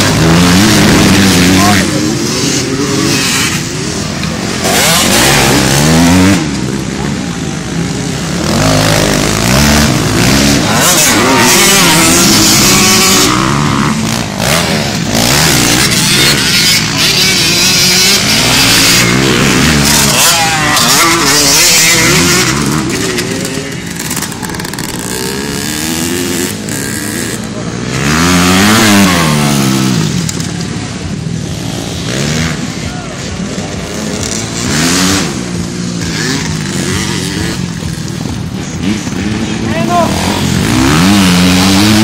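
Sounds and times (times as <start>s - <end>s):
motorcycle engines revving: 0.0s - 42.0s.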